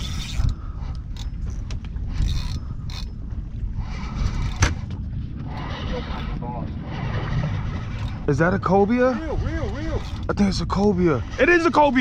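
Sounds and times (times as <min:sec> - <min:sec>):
fishing reel being cranked: 0:00.0 - 0:03.2, 0:07.8 - 0:12.0
low rumble: 0:00.0 - 0:12.0.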